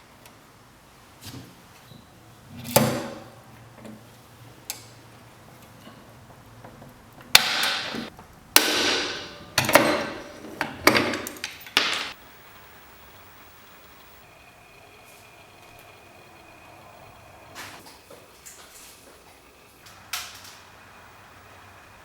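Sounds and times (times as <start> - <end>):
hard objects clacking: 7.4 - 12.2.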